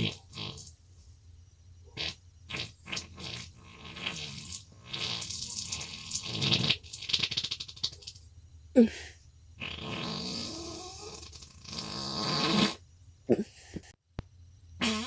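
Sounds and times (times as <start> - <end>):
person farting: 0.0 - 0.7, 1.9 - 8.1, 9.6 - 13.5, 14.8 - 15.0.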